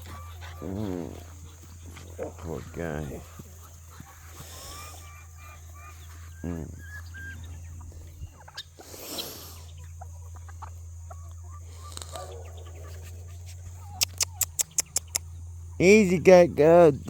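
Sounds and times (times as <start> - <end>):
chickens clucking softly: 0.0 - 16.3
steady low hum: 0.0 - 17.0
sharp clicks: 14.0 - 15.3.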